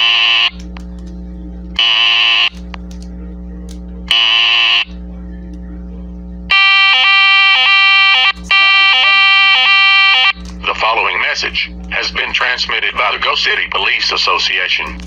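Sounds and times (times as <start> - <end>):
low hum: 0.0 - 15.0
two-tone alert signal: 1.8 - 2.6, 4.1 - 4.9, 6.5 - 10.4
buzzy data bursts: 6.5 - 14.8.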